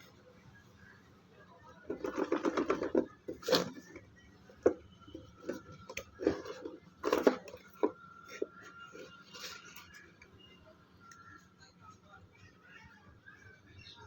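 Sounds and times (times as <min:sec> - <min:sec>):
handling clicks and rustles: 0:01.9 - 0:10.0.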